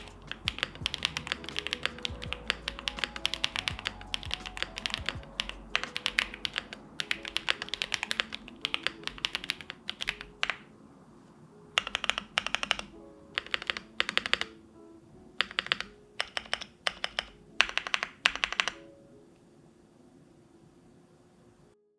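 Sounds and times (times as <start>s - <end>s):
mechanical keyboard typing: 0.0s - 10.7s, 11.8s - 14.6s, 15.4s - 18.9s
soft background music: 0.0s - 21.9s.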